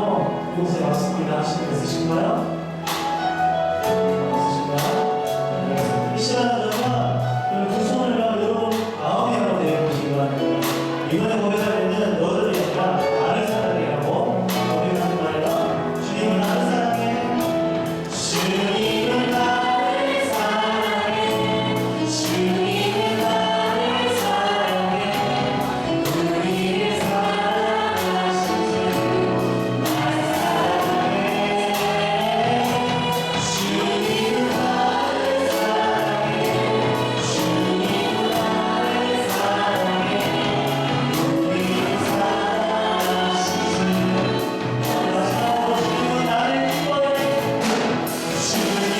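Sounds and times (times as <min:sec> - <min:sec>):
band accompaniment: 0:00.0 - 0:48.9
congregation singing worship song: 0:00.0 - 0:48.9
drum and cymbal strokes: 0:09.9 - 0:48.9.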